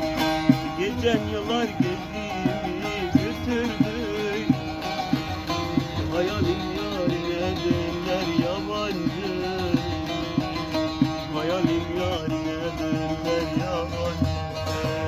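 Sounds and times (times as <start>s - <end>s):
strummed string instrument: 0.0s - 15.0s.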